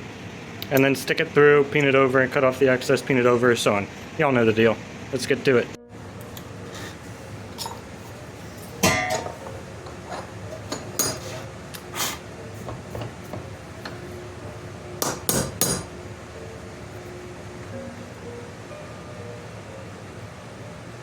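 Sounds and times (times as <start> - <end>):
hammer striking metal: 8.6 - 11.4, 15.0 - 16.0.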